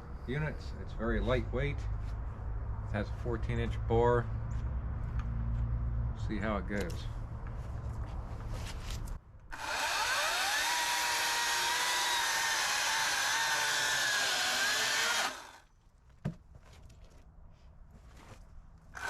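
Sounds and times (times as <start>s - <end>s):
electric chainsaw whine cutting wood: 9.5s - 15.6s.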